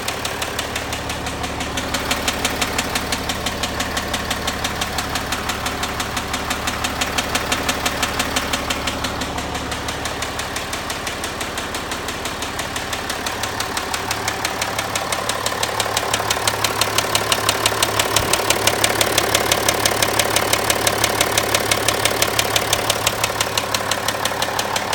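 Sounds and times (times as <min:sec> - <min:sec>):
car engine idling: 0:00.0 - 0:24.9
engine ticking knock: 0:00.0 - 0:24.9.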